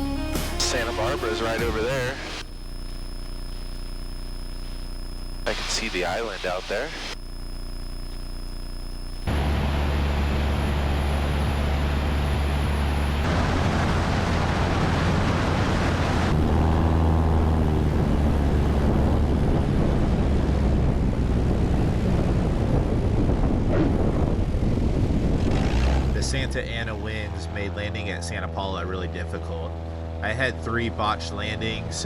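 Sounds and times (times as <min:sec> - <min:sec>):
propeller aircraft engine droning: 0:09.1 - 0:32.0.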